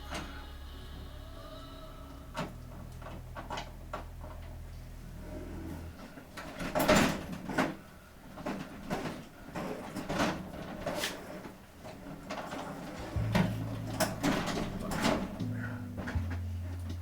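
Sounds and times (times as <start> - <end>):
low steady hum: 0.0 - 9.0, 13.0 - 17.0.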